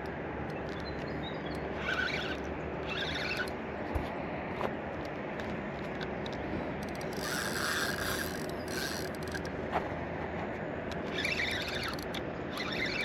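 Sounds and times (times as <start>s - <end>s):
fishing reel whirring: 0.0s - 3.7s, 6.0s - 9.5s, 10.9s - 13.0s.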